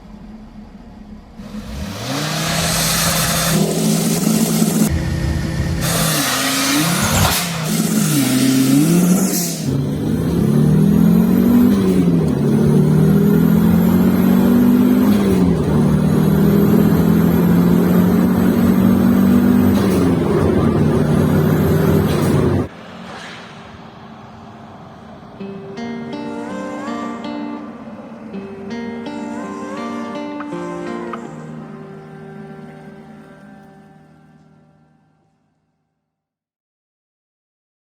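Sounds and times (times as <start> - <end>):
turbocharged engine revving: 1.2 - 23.0.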